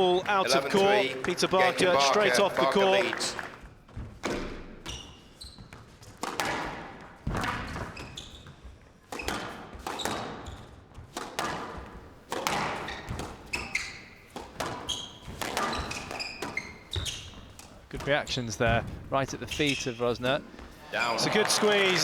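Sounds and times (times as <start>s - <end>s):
shoes squeaking on court: 0.0s - 3.5s, 4.8s - 6.2s, 7.7s - 10.8s, 11.7s - 22.0s
racket striking ball: 11.1s - 18.1s.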